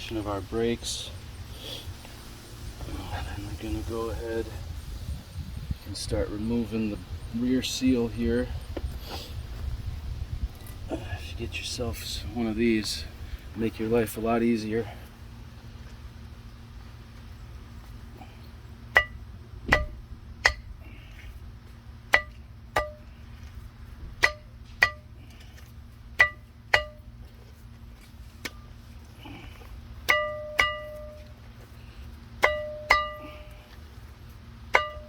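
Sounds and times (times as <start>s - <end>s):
steady low hum: 0.0s - 35.0s
metal-on-metal taps with ringing: 18.9s - 20.7s, 22.1s - 23.1s, 24.2s - 25.1s, 26.2s - 27.2s, 30.0s - 31.4s, 32.4s - 33.6s, 34.7s - 35.0s.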